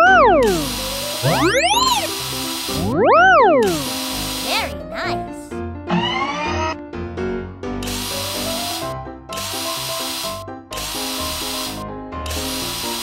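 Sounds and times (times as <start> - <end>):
background music: 0.0 - 13.0
power drill bursts: 7.8 - 13.0.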